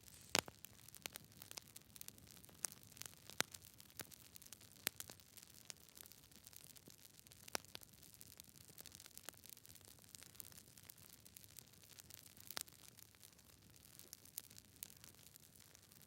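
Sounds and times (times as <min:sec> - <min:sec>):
loud fire pops: 0:00.0 - 0:01.6
fire crackling: 0:00.0 - 0:16.0.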